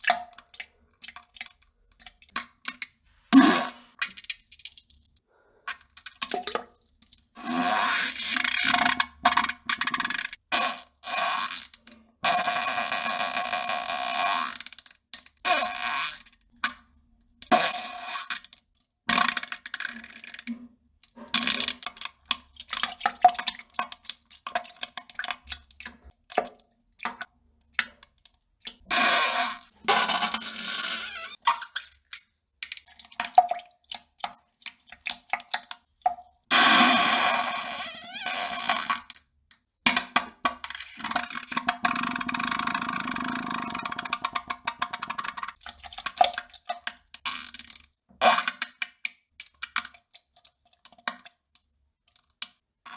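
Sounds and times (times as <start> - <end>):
fart sound effects: 3.4 - 3.8, 29.9 - 31.4.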